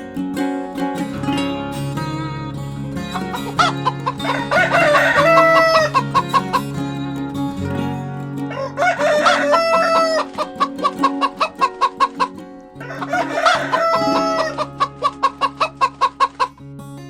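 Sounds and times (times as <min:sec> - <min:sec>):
guitar music: 0:00.0 - 0:17.0
chicken clucking: 0:03.2 - 0:06.8, 0:08.5 - 0:16.5.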